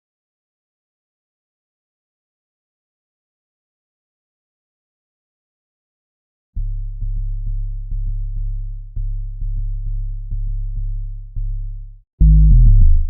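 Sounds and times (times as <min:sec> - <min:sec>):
synthesized sub-bass notes: 0:06.6 - 0:13.0
booming bass note sliding down: 0:12.2 - 0:13.0.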